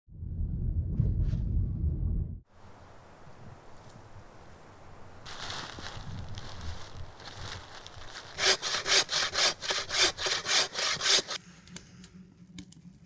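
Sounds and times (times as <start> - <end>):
hand saw cutting wood: 8.3 - 11.4.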